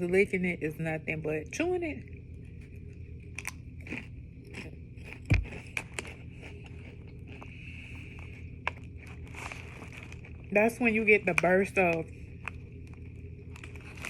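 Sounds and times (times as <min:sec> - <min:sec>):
potato chips being chewed: 0:03.2 - 0:14.0.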